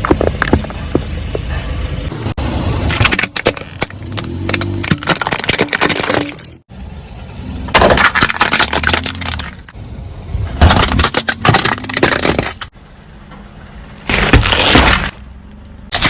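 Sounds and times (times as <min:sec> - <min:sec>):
tyre crushing brittle objects: 0:02.9 - 0:06.6, 0:07.7 - 0:09.8, 0:10.6 - 0:12.7, 0:14.0 - 0:15.3.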